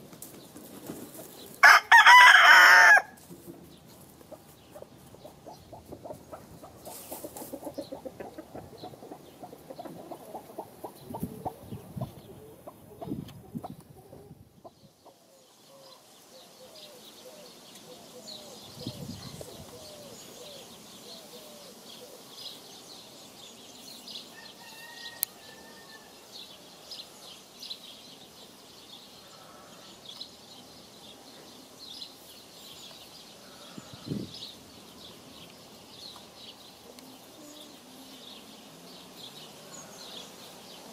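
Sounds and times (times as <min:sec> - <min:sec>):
chickens clucking: 0:00.2 - 0:01.6, 0:03.2 - 0:15.3.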